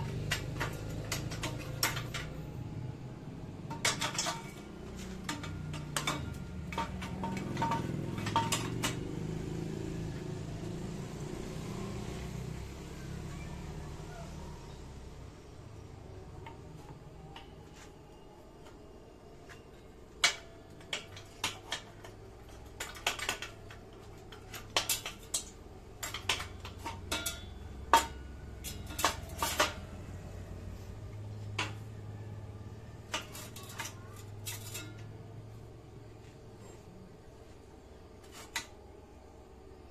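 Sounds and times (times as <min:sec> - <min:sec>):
low steady hum: 0:00.0 - 0:39.9
metal parts clinking: 0:00.1 - 0:02.6, 0:03.6 - 0:09.3, 0:20.2 - 0:30.2, 0:33.0 - 0:35.2.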